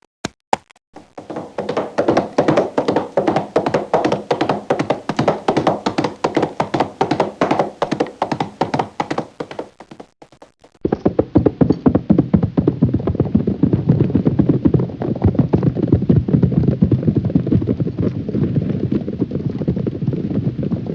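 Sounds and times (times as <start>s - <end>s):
horses galloping: 1.0s - 20.9s.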